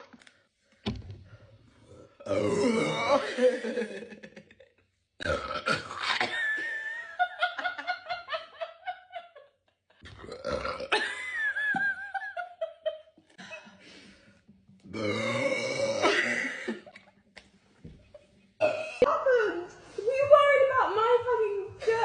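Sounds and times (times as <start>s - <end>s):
person burping loudly: 1.9s - 3.4s, 5.2s - 6.3s, 10.0s - 11.0s, 14.9s - 16.8s, 18.6s - 19.0s.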